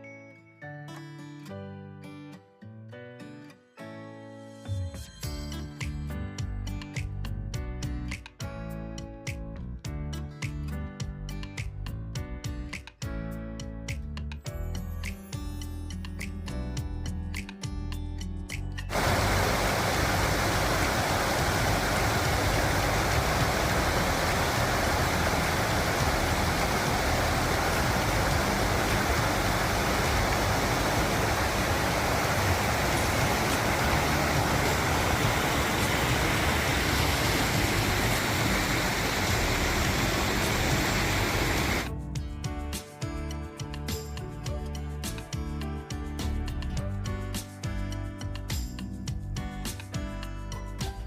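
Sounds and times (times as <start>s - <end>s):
steady rushing noise: 18.9s - 41.9s.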